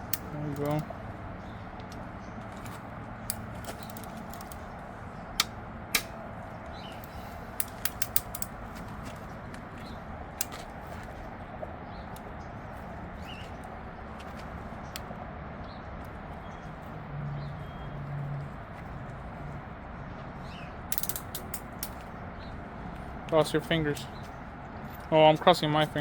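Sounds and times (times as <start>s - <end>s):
steady background hum: 0.0s - 26.0s
quick clicks: 5.4s - 6.2s, 7.0s - 8.6s, 20.9s - 22.1s
metal clinks of hand tools: 20.9s - 22.0s.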